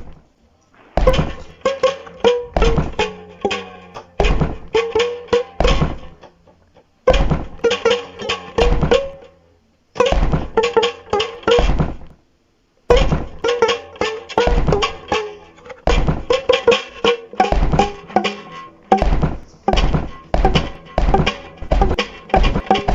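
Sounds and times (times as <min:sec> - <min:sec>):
plucked notes: 0:00.0 - 0:22.9
heavy drum thumps: 0:00.8 - 0:01.6, 0:02.3 - 0:04.8, 0:05.5 - 0:06.2, 0:07.1 - 0:07.7, 0:08.6 - 0:09.2, 0:10.0 - 0:10.8, 0:11.5 - 0:12.2, 0:12.9 - 0:13.4, 0:14.4 - 0:15.2, 0:15.9 - 0:22.9.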